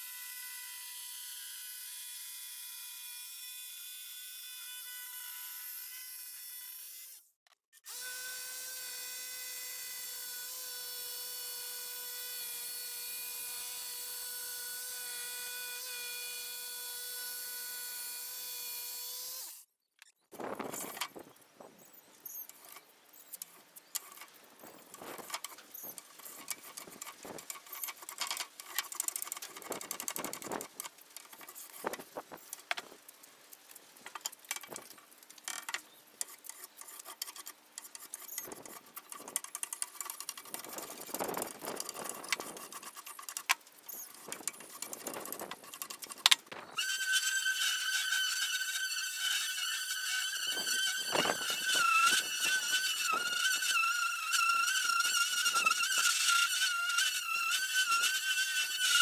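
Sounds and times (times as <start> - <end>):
scratching and clicking: 20.4 - 59.0
power tool motor whining: 46.2 - 59.0.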